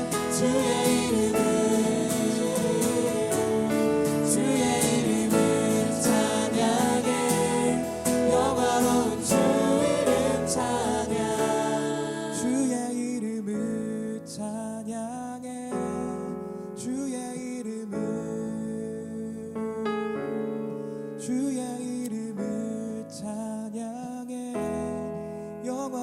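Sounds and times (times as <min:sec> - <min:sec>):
instrumental accompaniment: 0:00.0 - 0:12.6
group singing worship song: 0:00.0 - 0:13.5.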